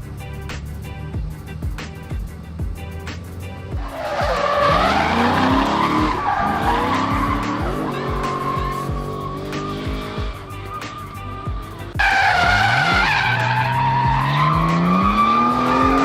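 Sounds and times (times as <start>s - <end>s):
background music with steady beat: 0.0s - 16.0s
car engine revving: 0.0s - 16.0s
tyres squealing: 3.8s - 16.0s.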